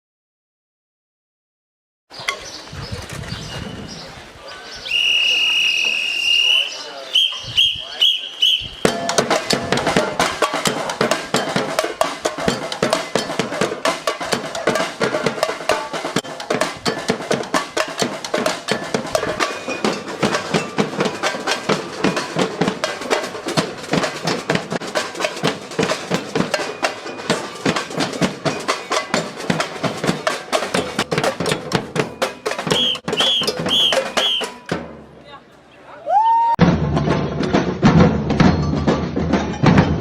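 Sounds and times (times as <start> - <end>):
drums playing fast rhythm: 7.2 - 35.1, 36.6 - 40.0.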